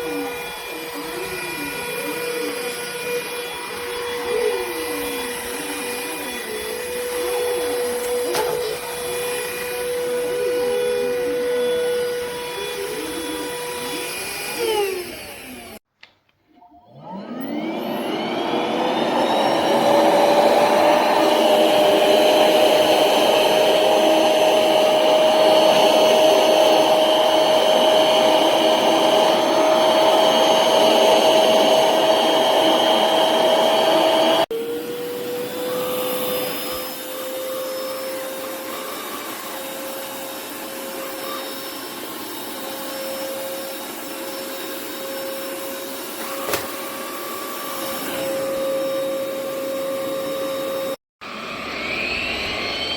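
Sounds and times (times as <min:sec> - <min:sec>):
vacuum motor whining: 0:00.0 - 0:15.8, 0:16.9 - 0:52.9.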